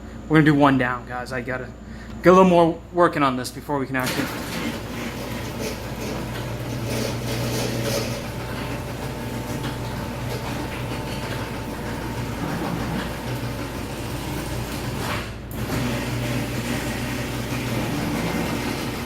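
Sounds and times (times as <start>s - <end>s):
garage door opener running: 3.9s - 19.0s.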